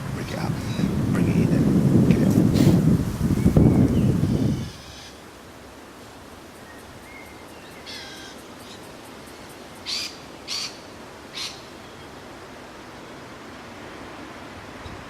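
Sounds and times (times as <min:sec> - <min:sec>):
bird calling: 0:03.4 - 0:05.2, 0:06.7 - 0:08.9, 0:09.8 - 0:12.1.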